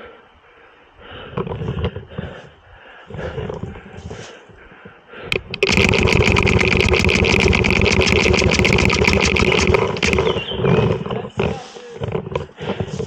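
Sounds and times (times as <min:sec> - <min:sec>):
heavy breathing: 0:00.6 - 0:05.4, 0:11.0 - 0:13.0
paintball marker rapid firing: 0:05.3 - 0:11.1.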